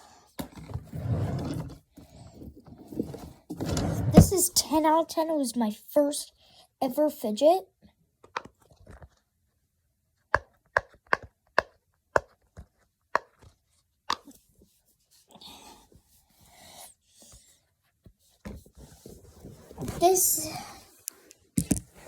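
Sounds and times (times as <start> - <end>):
rubbing and handling sounds: 2.3 - 4.6, 17.2 - 22.0.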